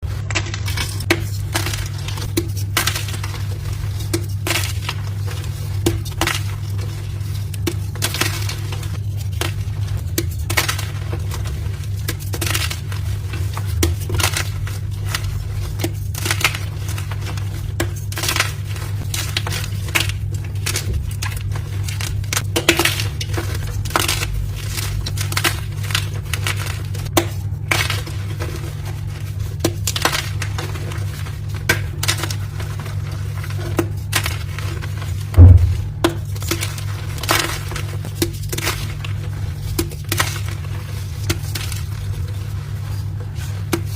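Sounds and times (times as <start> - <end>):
low hum: 34.3 - 37.2.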